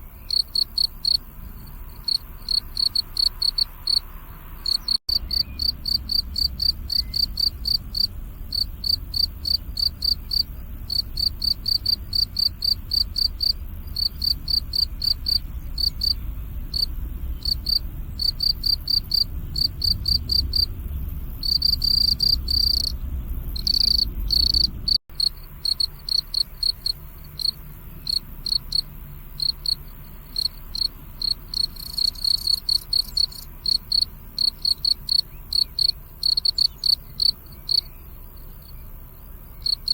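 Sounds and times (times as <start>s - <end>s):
cricket chirping: 0.0s - 39.9s
low rumble: 4.2s - 25.7s.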